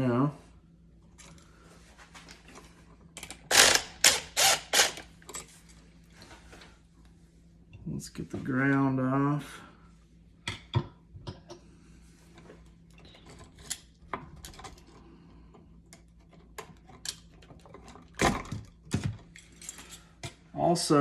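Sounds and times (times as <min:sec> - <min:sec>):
screwdriver clicking on metal: 0:03.2 - 0:05.1.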